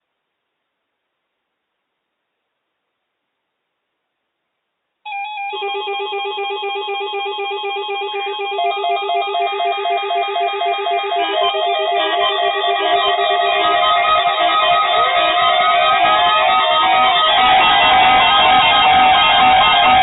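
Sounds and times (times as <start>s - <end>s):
music with plucked repeating notes: 5.1s - 20.0s.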